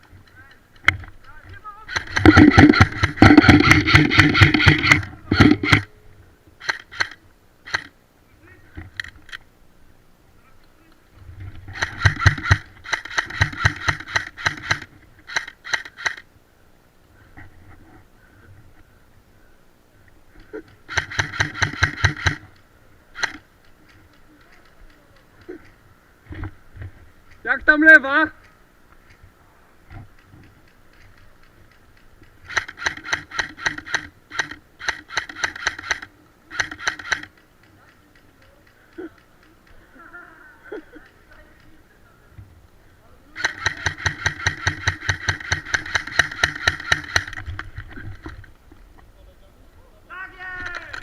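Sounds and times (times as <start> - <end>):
airsoft gun firing single shots: 11.8 - 16.2, 20.9 - 22.5, 43.4 - 47.4.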